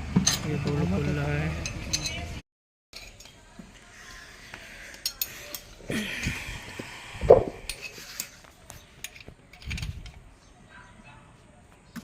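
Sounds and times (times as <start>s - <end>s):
metal tools clinking and knocking: 0.2s - 0.8s, 1.6s - 2.3s, 3.0s - 3.4s, 4.9s - 5.8s, 7.5s - 10.2s.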